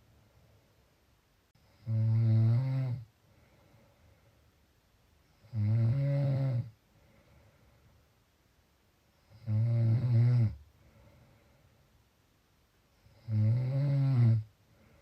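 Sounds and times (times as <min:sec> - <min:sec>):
quiet breathing: 0:00.0 - 0:15.0
buzzing snoring: 0:01.6 - 0:03.1, 0:05.3 - 0:06.8, 0:09.2 - 0:10.6, 0:13.0 - 0:14.5.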